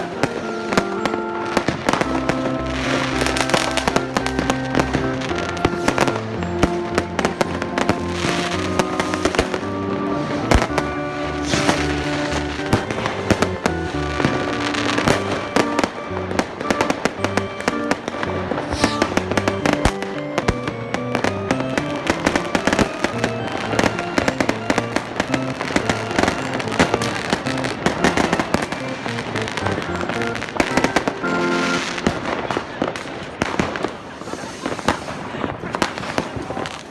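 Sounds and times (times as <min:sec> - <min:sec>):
fireworks bangs and crackles: 0:00.0 - 0:36.9
background music with bass line: 0:01.8 - 0:30.7.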